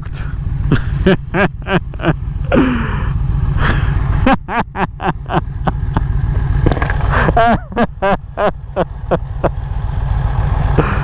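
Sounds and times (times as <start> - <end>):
rider's voice: 0.0 - 2.1
motorcycle engine running: 0.0 - 11.0.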